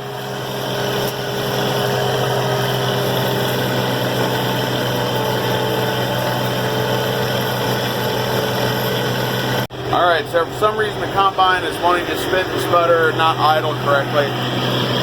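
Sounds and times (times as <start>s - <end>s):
diesel engine running: 0.0s - 15.0s
man talking: 9.9s - 14.4s.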